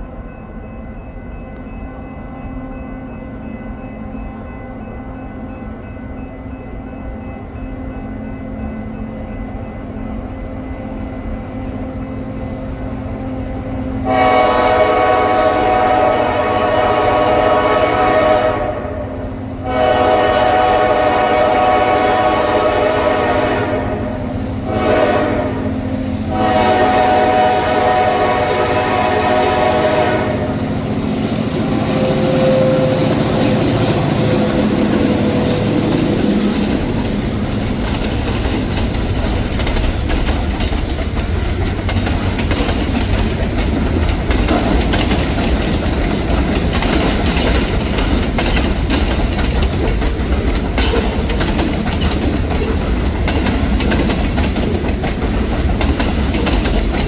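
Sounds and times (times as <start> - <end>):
train rumbling past: 0.0 - 57.0
train air horn blasts: 14.0 - 37.2
wheels clacking over rail joints: 33.0 - 57.0.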